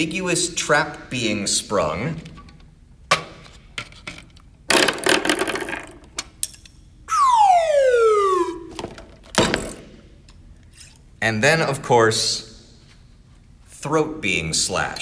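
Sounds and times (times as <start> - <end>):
falling whistle-like tone: 7.1 - 8.9.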